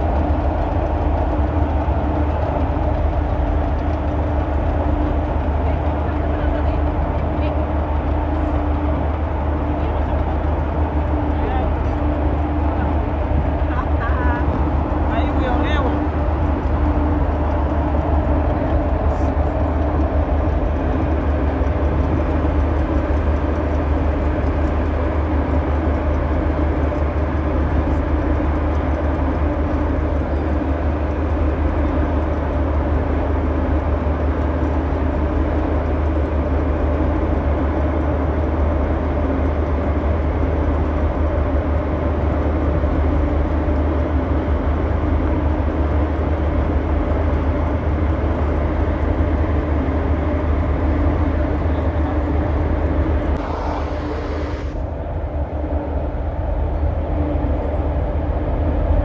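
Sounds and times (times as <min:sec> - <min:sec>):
ferry engines droning: 0:00.0 - 0:59.0.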